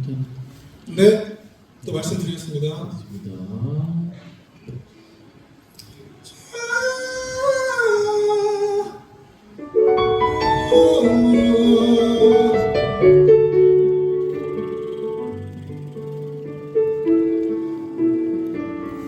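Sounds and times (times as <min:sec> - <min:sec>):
piano or keyboard chords: 0:09.6 - 0:19.0
downward sliding pitched phrase: 0:09.7 - 0:15.4.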